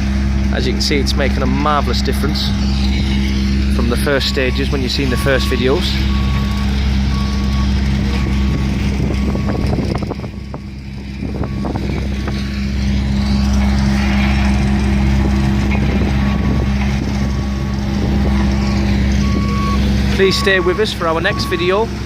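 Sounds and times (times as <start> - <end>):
diesel engine running: 0.0 - 22.0
reversing alarm beeping: 2.5 - 12.4, 16.0 - 22.0.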